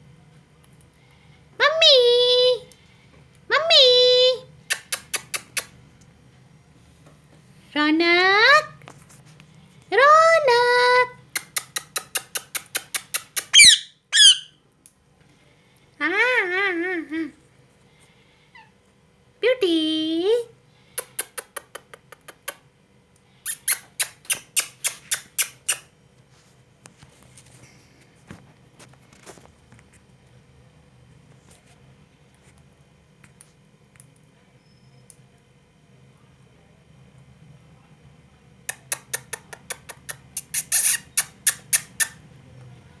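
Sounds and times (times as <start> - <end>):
parrot clicking: 4.7 - 5.7, 11.4 - 14.4, 21.0 - 22.6, 38.7 - 42.2
parrot giving sharp calls: 13.2 - 14.6.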